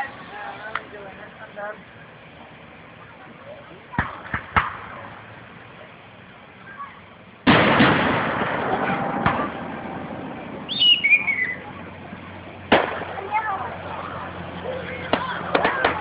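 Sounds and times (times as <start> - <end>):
fireworks banging: 3.8 - 6.2, 7.4 - 16.0.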